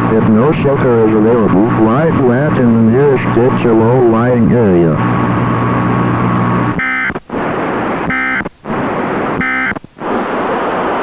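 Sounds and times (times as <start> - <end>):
low hum: 0.0 - 10.8
steady radio hiss: 0.0 - 11.0
buzzing digital data bursts: 6.7 - 7.2, 8.0 - 8.5, 9.4 - 9.9.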